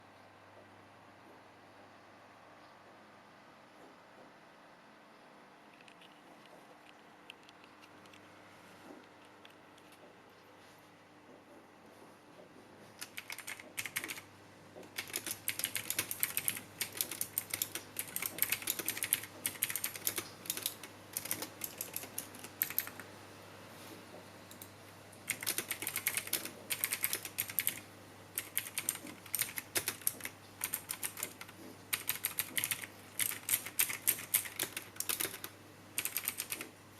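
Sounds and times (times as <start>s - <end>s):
mechanical keyboard clicking: 13.0s - 23.1s, 25.3s - 36.7s.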